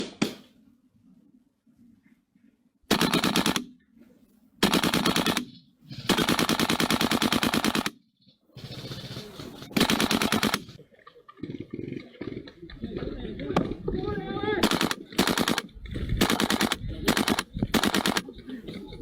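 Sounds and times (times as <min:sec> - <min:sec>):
airsoft rifle firing full-auto: 0:02.9 - 0:03.7, 0:04.6 - 0:05.5, 0:06.1 - 0:08.0, 0:09.8 - 0:10.8, 0:14.6 - 0:18.2.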